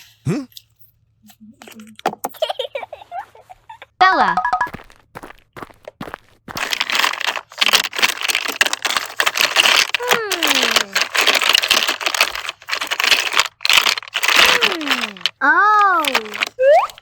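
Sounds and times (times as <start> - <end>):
crunchy slime crackling: 5.1 - 17.0.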